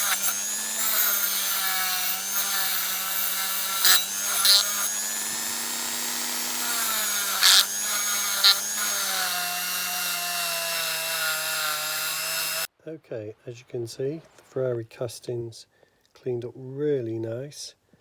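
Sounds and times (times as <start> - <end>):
rotary tool running: 0.0 - 12.7
tool bit scraping metal: 0.0 - 12.7.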